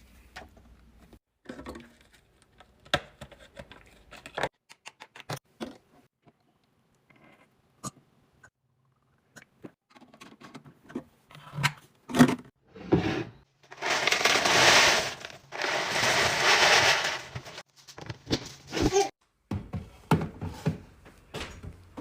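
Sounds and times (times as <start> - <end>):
packaging rustling: 13.7 - 18.7.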